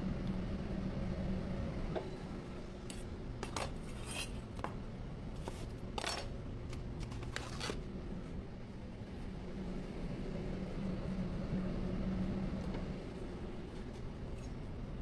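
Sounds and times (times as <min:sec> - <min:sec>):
low background hum: 0:00.0 - 0:15.0
metal utensils clinking and scraping: 0:02.9 - 0:04.5, 0:05.4 - 0:06.4.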